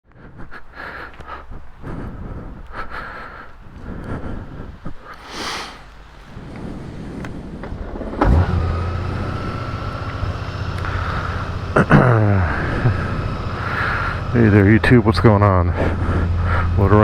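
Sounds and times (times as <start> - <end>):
motorcycle engine starting and idling: 6.0 - 17.0.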